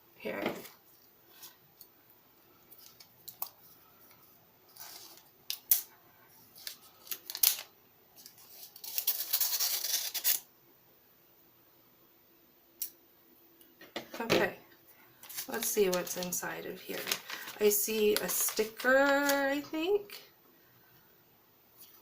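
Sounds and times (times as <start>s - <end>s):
blade cutting paper package: 8.5s - 10.4s.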